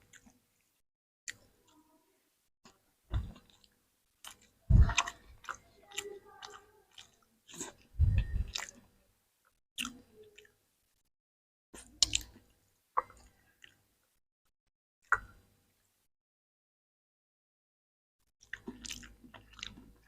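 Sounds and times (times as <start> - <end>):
chewing and crunching food: 0.0 - 2.0, 2.7 - 10.6, 11.8 - 14.2, 18.3 - 20.0.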